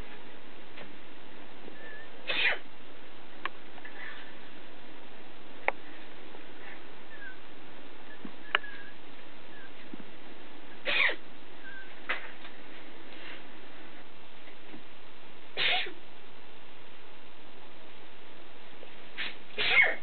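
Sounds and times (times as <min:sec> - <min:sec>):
steady hiss: 0:00.0 - 0:20.0
woman sneezing: 0:02.3 - 0:02.6, 0:15.6 - 0:16.0, 0:19.2 - 0:20.0.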